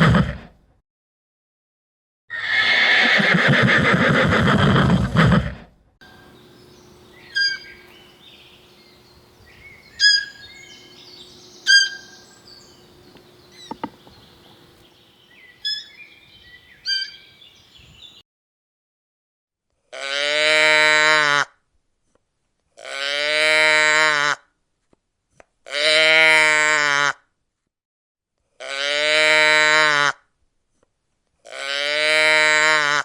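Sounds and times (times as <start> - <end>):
bird sharp calls: 6.0 - 18.2
cow mooing: 6.1 - 15.0.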